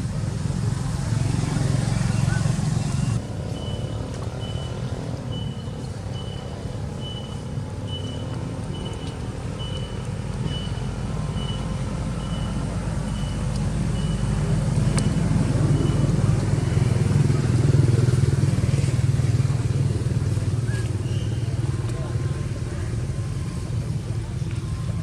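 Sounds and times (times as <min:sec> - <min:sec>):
low motor rumble: 0:00.0 - 0:25.0
reversing alarm beeps: 0:03.5 - 0:16.8.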